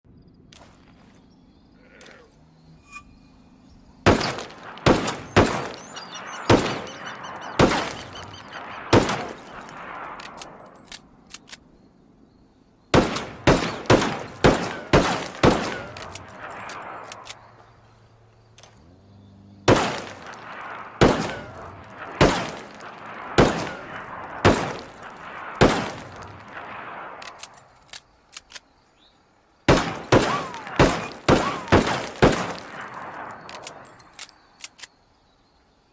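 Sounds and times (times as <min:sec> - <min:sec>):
revolver shots echoing: 0:19.7 - 0:26.7, 0:29.7 - 0:33.2.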